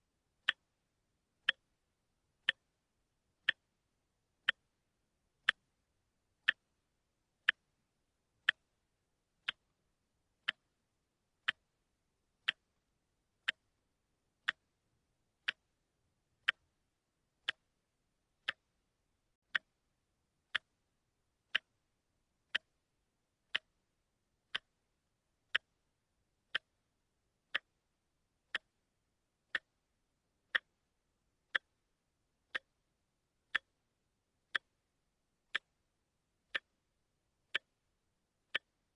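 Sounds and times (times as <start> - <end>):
watch ticking: 0.4 - 0.8, 1.4 - 1.8, 2.4 - 2.8, 3.4 - 4.8, 5.4 - 5.8, 6.4 - 7.8, 8.4 - 8.8, 9.4 - 10.8, 11.4 - 17.8, 18.4 - 18.8, 19.4 - 19.8, 20.5 - 21.9, 22.5 - 25.9, 26.5 - 26.9, 27.5 - 38.9.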